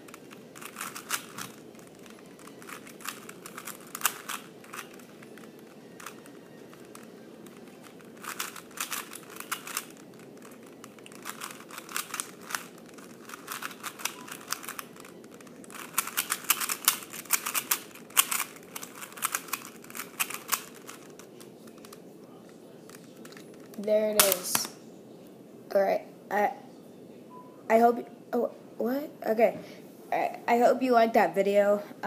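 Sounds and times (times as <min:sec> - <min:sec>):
plastic puzzle cube clicking: 0:00.0 - 0:22.0, 0:22.9 - 0:24.7
steady low hum: 0:00.0 - 0:30.8.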